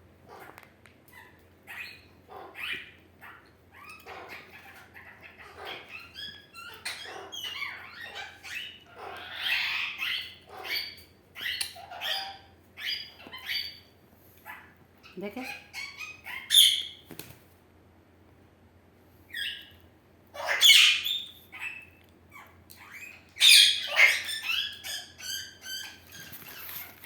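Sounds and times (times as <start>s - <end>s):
parrot bark-like calls: 0.3s - 13.8s, 14.4s - 17.0s, 20.3s - 26.9s.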